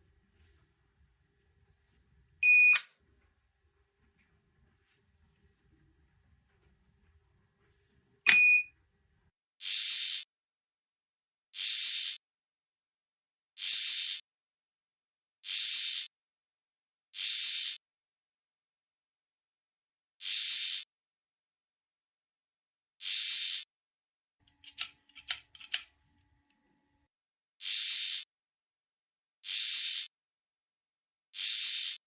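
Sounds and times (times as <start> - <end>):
short electronic beep: 2.4 - 2.8, 8.3 - 8.7
click: 2.7 - 2.9, 8.3 - 8.5, 24.5 - 26.6
short bursts of hiss: 9.6 - 10.2, 11.6 - 12.2, 13.6 - 14.2, 15.5 - 16.1, 17.2 - 17.8, 20.2 - 20.8, 23.0 - 23.6, 27.6 - 28.2, 29.4 - 30.1, 31.4 - 32.0.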